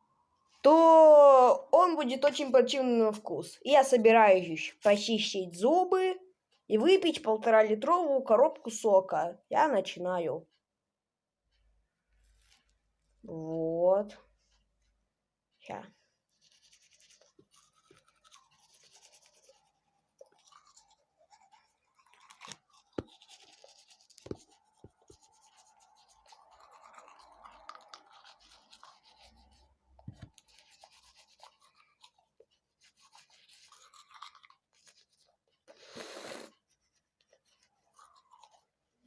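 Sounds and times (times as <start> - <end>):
toothbrush scrubbing teeth: 16.2 - 39.0.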